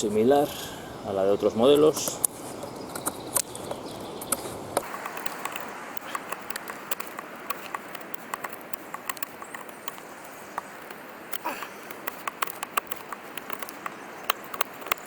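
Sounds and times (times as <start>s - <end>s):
knife cutting hard wood: 4.8s - 15.0s.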